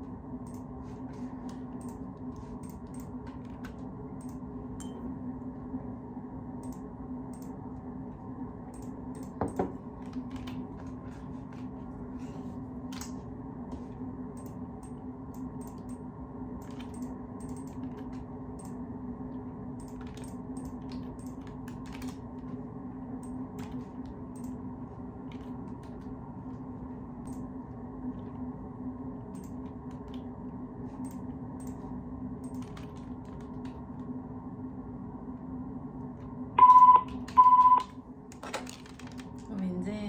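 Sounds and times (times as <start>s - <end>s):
steady low hum: 0.0s - 40.0s
keyboard typing: 19.8s - 22.3s, 32.4s - 33.8s, 36.6s - 39.5s.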